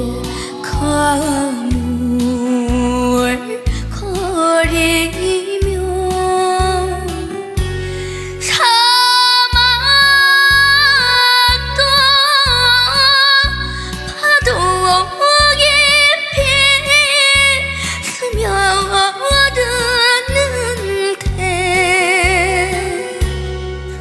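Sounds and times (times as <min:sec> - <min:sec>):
girl singing with vibrato: 0:00.0 - 0:24.0.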